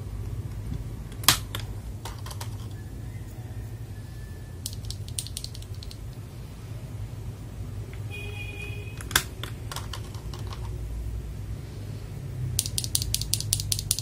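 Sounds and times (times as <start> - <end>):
steady low hum: 0.0 - 14.0
mechanical keyboard clicks: 4.6 - 6.2, 12.6 - 14.0.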